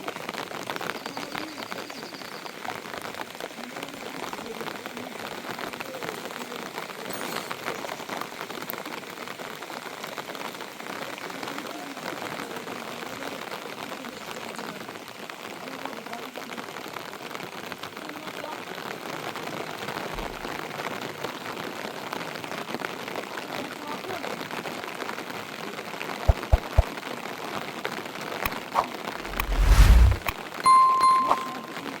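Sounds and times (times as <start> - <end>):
steady rain: 0.0 - 7.1, 7.7 - 28.2
short low thuds: 29.2 - 30.3.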